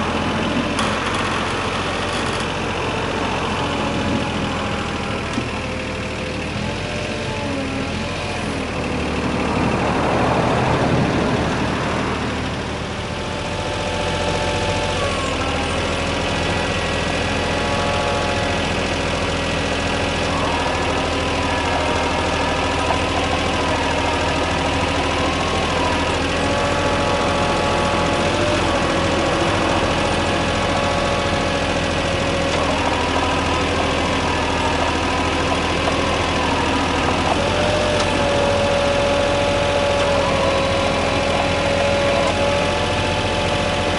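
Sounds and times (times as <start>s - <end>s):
excavator diesel engine running: 0.0s - 43.9s
engine whine changing pitch: 8.4s - 43.9s.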